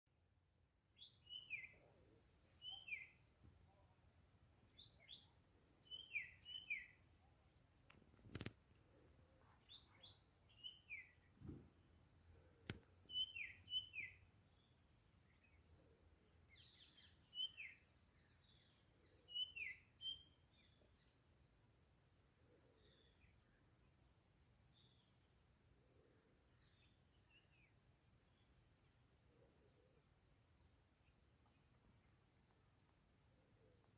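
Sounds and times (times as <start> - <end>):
insect drone: 0.1 - 33.9
faint clicks: 7.8 - 8.6, 12.6 - 13.0.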